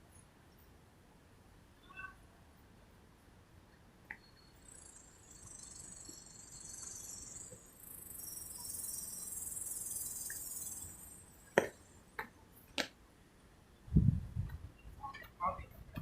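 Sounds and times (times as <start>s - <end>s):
high-pitched insect buzz: 4.6s - 11.5s.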